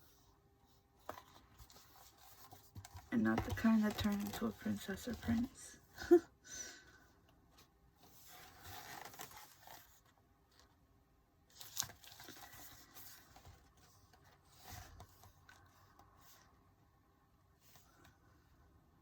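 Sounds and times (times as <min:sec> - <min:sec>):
paper rustling: 0:01.0 - 0:05.6.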